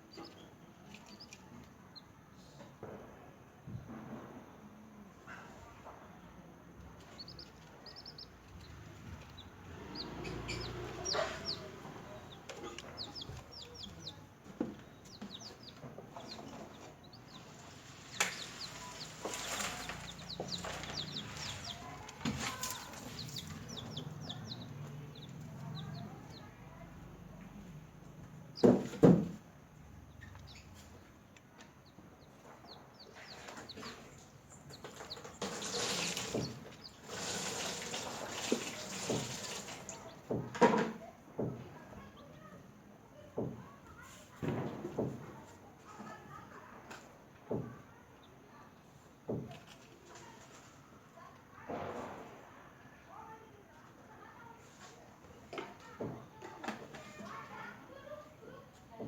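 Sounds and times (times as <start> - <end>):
chicks peeping: 0.0 - 2.6, 6.7 - 40.7.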